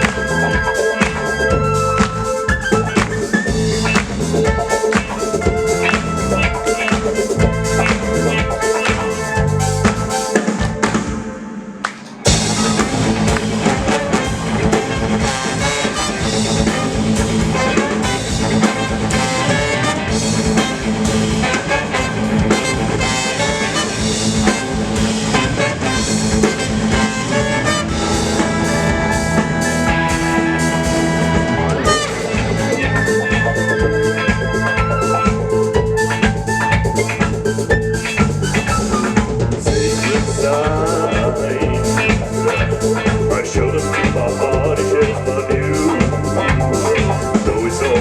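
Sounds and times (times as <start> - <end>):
horn section playing: 0.0 - 37.2
drum kit: 0.0 - 48.0.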